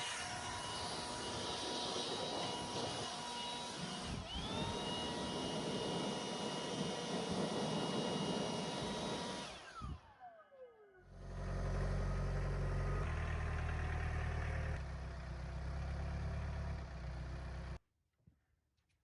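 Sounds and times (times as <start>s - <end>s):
engine running at low speed: 0.0s - 17.8s
sawmill blade cutting and whining: 0.0s - 17.8s.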